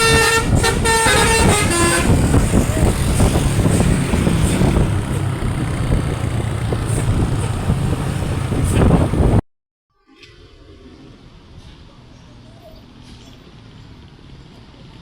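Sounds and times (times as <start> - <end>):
bus engine running: 0.0 - 9.4
traffic noise: 0.0 - 9.4, 10.4 - 15.0.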